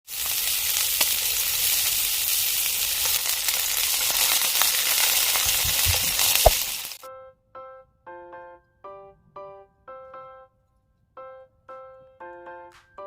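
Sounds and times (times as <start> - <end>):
food sizzling in a pan: 0.0 - 7.0
small pops: 5.4 - 7.0.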